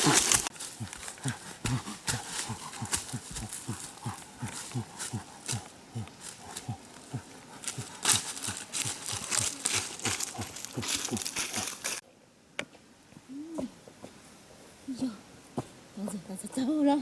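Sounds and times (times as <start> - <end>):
crackling crinkling rustle: 0.0 - 12.0
low falling grunts: 0.0 - 12.0.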